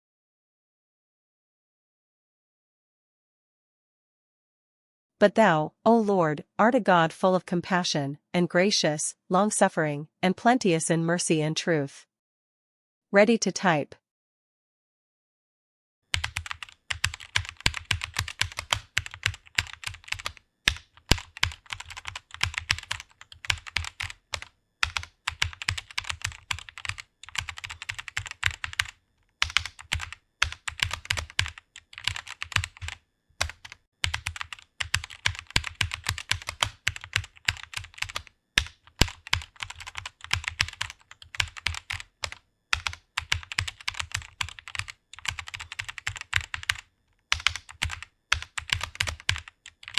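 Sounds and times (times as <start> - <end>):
computer keyboard typing: 16.1 - 49.9.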